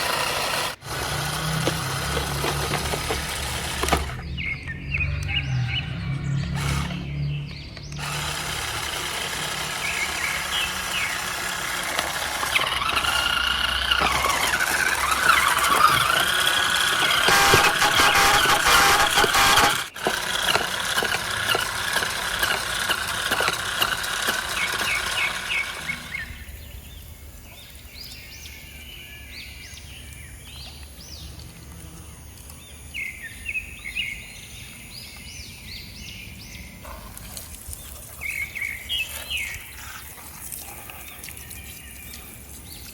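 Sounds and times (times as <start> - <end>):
small electric motors whining: 0.0 - 4.6, 5.2 - 26.7
birds chirping: 0.0 - 31.5, 32.1 - 42.9.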